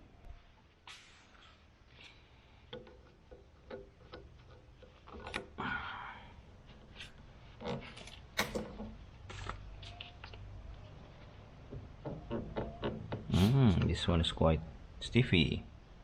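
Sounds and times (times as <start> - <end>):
tools and parts clicking and knocking: 2.6 - 5.6, 7.6 - 9.5.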